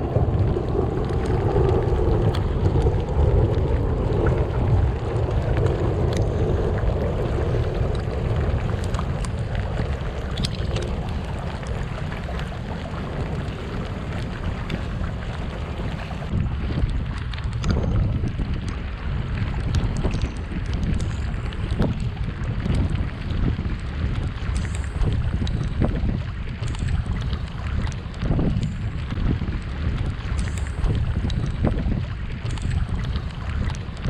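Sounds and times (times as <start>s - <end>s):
water rushing along hull: 0.0s - 34.0s
wind buffeting microphone: 0.0s - 34.0s
light ticks: 19.6s - 22.1s, 24.5s - 25.9s, 26.6s - 29.2s, 30.3s - 31.8s, 32.4s - 34.0s.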